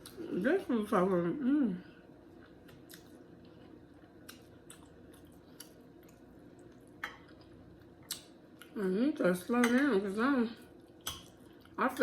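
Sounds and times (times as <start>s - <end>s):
person chewing: 2.3s - 8.8s.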